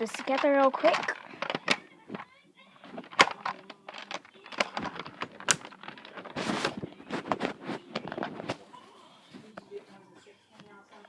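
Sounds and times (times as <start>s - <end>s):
plastic parts clicking and rattling: 0.0s - 8.6s
brief plastic scrape: 2.9s - 8.6s.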